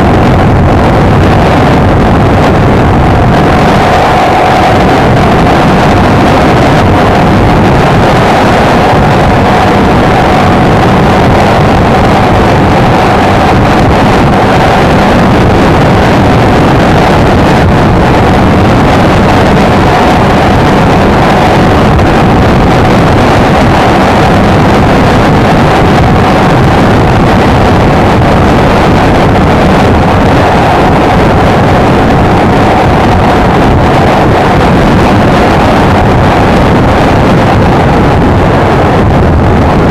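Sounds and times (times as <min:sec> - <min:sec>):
motorcycle engine running: 0:00.0 - 0:26.8
wind rushing over microphone: 0:00.0 - 0:39.9.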